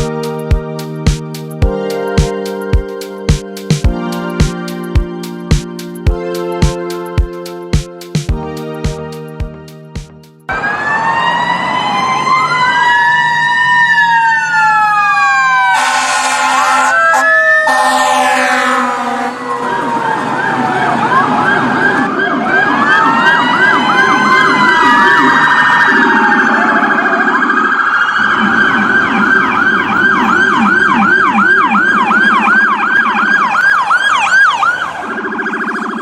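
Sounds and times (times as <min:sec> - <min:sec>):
electronic siren wailing and yelping: 0:10.5 - 0:36.0
low rough siren tone: 0:10.5 - 0:36.0.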